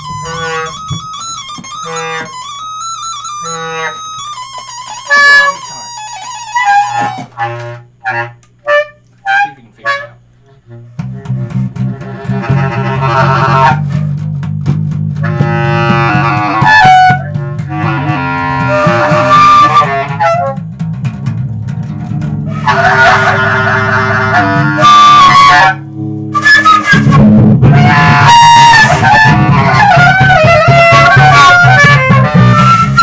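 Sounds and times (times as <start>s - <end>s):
wind and string melodies: 0.0s - 14.2s, 15.1s - 20.6s
fast-pulsing bass line: 10.7s - 33.0s.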